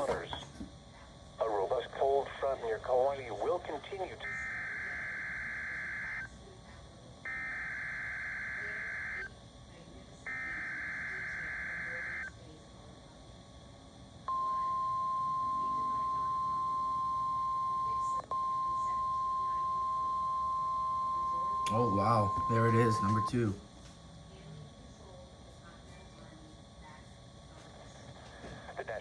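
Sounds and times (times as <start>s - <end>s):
steady alarm tone: 7.3s - 9.3s, 10.3s - 12.3s, 14.3s - 23.6s.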